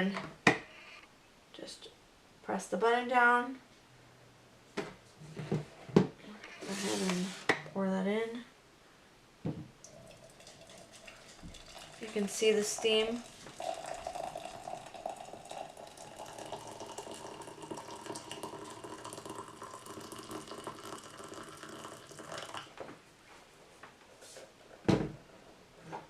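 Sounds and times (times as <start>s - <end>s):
water pouring into a cup: 9.8s - 22.8s.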